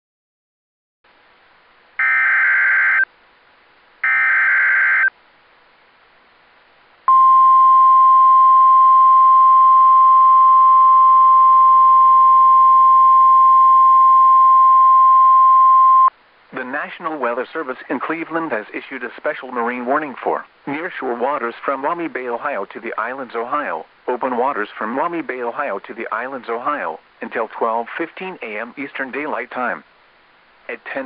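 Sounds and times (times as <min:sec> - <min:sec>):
steady warning alarm tone: 0:02.0 - 0:03.1, 0:04.0 - 0:05.1.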